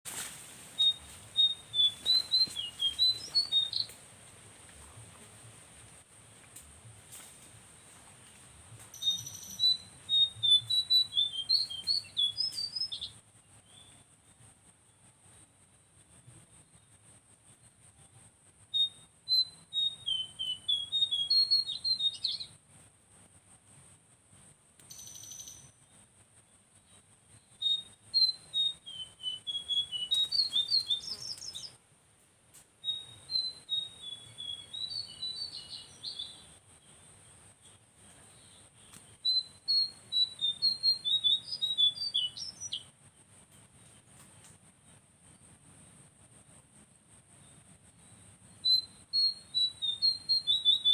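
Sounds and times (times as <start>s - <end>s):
bird chirping whistled notes: 0.8s - 3.9s, 8.9s - 14.0s, 18.7s - 22.6s, 24.9s - 25.8s, 26.8s - 31.8s, 32.8s - 36.6s, 38.9s - 42.9s, 48.6s - 50.9s.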